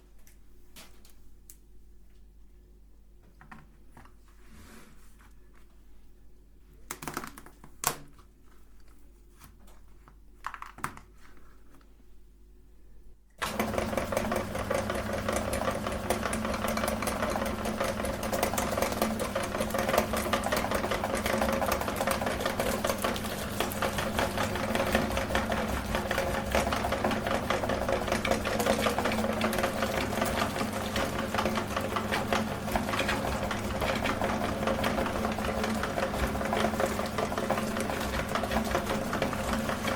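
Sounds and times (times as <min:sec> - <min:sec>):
electric meat grinder running: 0:13.4 - 0:39.9.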